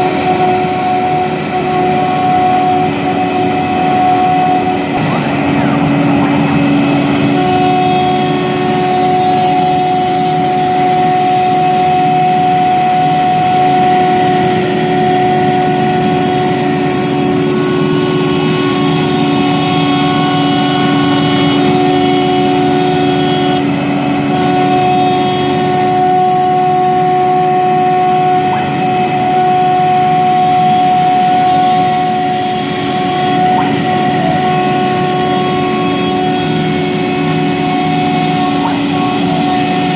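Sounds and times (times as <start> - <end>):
wood router cutting wood: 0.0 - 39.9.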